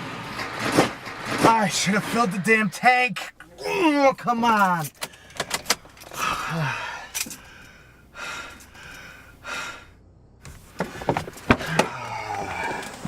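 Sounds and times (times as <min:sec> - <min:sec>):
man groaning: 0:03.4 - 0:04.1, 0:06.2 - 0:07.1, 0:11.6 - 0:13.0
man sighing heavily: 0:06.1 - 0:10.0, 0:11.6 - 0:13.0.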